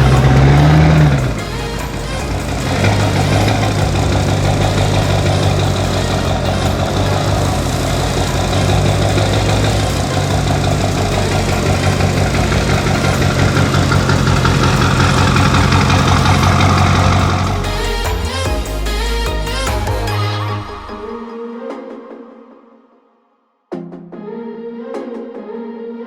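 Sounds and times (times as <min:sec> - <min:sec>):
truck engine idling: 0:00.0 - 0:20.0
background music: 0:00.0 - 0:26.0.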